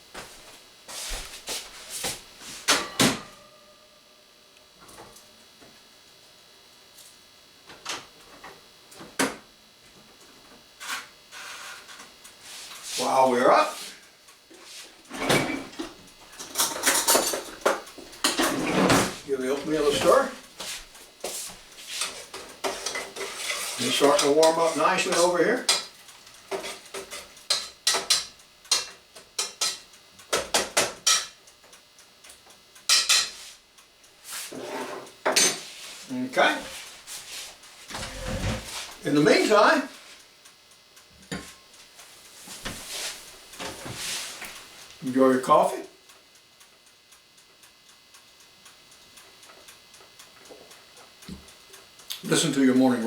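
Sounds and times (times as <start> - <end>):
utensils clinking against pots: 15.1 - 19.0, 32.9 - 33.4.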